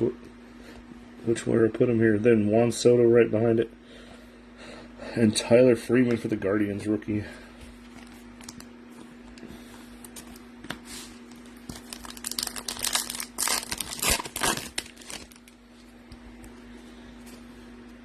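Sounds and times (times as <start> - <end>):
foil wrapper crinkling: 7.8 - 8.7, 11.2 - 15.6.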